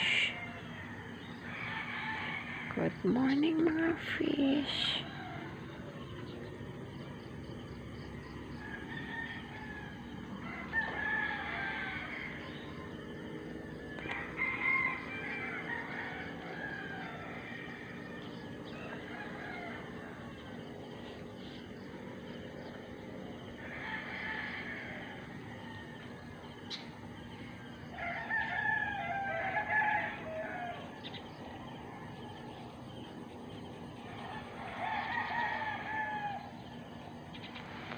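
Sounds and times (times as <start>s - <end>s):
rooster crowing: 0.0s - 2.9s, 8.5s - 13.0s, 13.9s - 20.7s, 23.4s - 26.8s, 27.6s - 33.0s, 34.1s - 36.7s.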